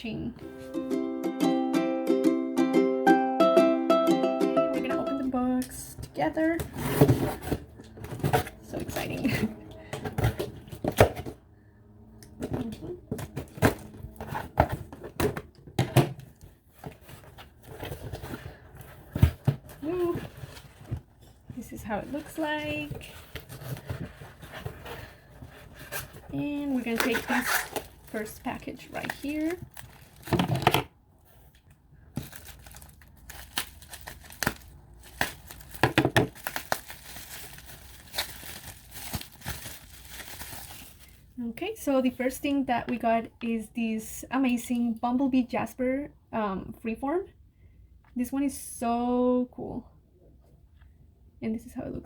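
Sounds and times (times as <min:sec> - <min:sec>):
packaging rustling: 0:21.9 - 0:41.3.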